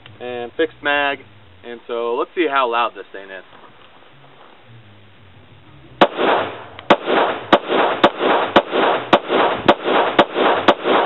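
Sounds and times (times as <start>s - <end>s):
rifle gunshots with echo: 6.0s - 11.0s.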